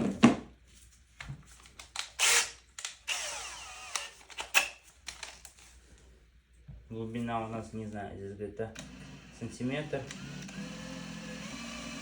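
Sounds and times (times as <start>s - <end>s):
power drill whining: 2.2s - 4.8s, 8.8s - 12.0s.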